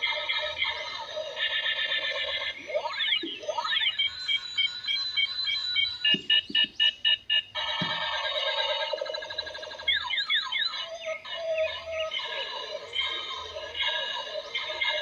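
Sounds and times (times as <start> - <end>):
electronic beeps: 0.0 - 15.0
toy pulsing electronic tones: 0.0 - 15.0.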